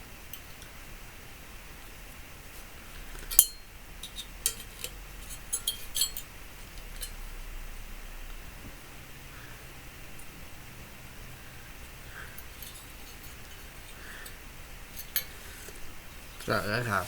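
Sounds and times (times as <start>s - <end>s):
metal parts clinking: 3.2s - 7.2s, 12.4s - 17.0s.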